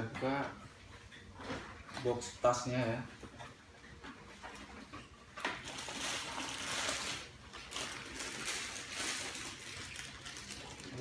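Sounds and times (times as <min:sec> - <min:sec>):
packaging rustling and scraping: 0:05.4 - 0:11.0.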